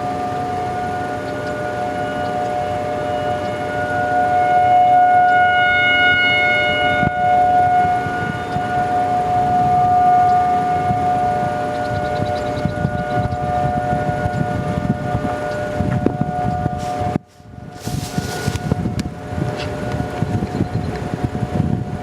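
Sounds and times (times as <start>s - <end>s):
warning siren wailing: 0.0s - 22.0s.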